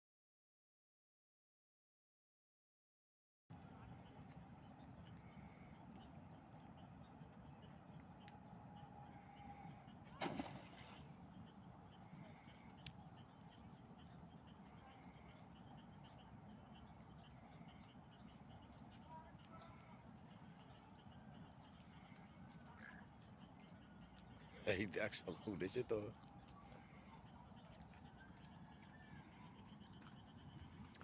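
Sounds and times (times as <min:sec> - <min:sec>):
insect chirps: 0:03.5 - 0:31.0.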